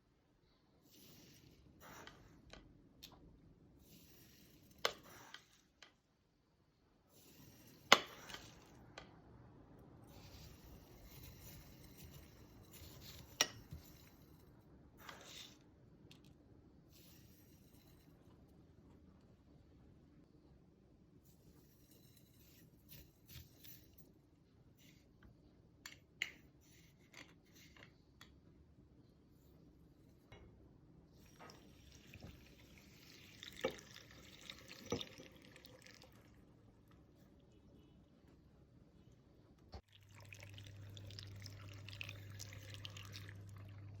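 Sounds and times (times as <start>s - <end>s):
rustling scrape: 10.1s - 15.6s
liquid running: 31.3s - 36.6s, 39.8s - 44.0s.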